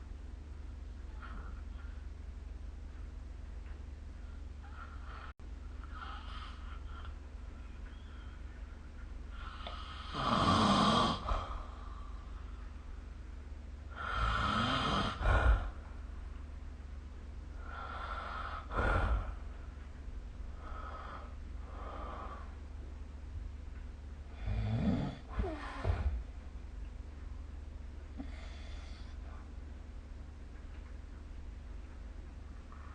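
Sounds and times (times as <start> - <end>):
faint low hum: 0.0 - 32.9
person snoring: 9.4 - 11.8, 13.9 - 15.8.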